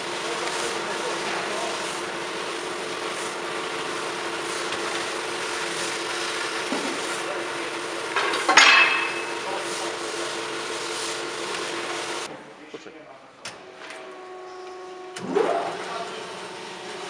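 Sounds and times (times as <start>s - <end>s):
metal band saw humming: 0.0s - 12.3s
sharp metallic clank: 8.2s - 9.4s.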